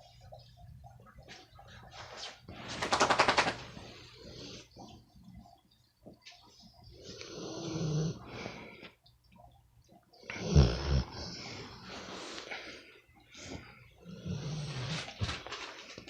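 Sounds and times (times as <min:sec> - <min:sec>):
dog snoring: 0:07.1 - 0:08.3, 0:10.3 - 0:11.4, 0:14.0 - 0:15.2.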